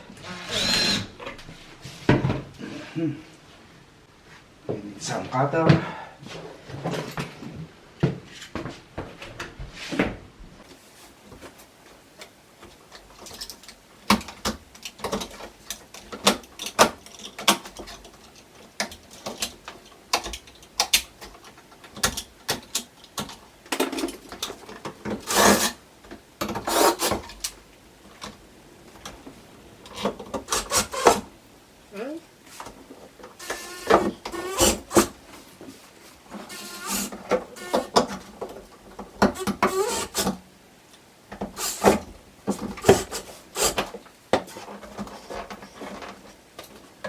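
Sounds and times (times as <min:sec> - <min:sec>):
clicks and knocks of tools: 0:11.3 - 0:28.4
scraping or rubbing: 0:24.8 - 0:25.8.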